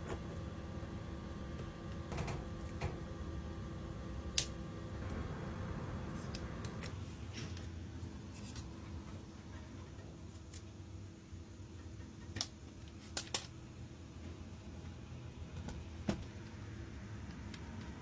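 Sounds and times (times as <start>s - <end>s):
steady low hum: 0.0s - 7.3s.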